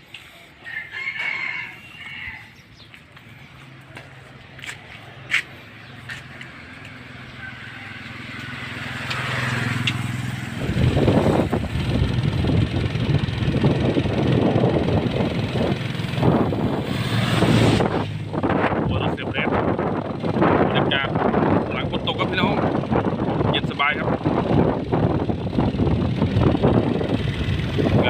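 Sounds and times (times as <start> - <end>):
vehicle engine humming: 0.0 - 28.0
loud rough rushing noise: 8.6 - 28.0.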